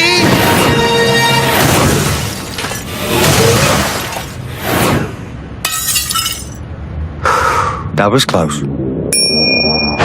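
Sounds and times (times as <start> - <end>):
cartoon glass smashing: 1.7 - 4.4, 5.6 - 6.6.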